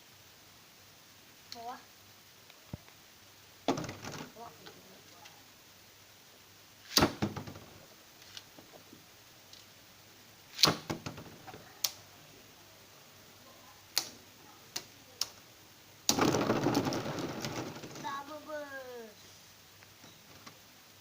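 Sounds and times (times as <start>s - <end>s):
continuous plastic rattle: 3.6s - 5.4s, 7.0s - 9.7s, 10.7s - 11.8s, 16.1s - 18.9s, 19.8s - 20.7s
plastic spinning top clicks: 16.1s - 18.0s.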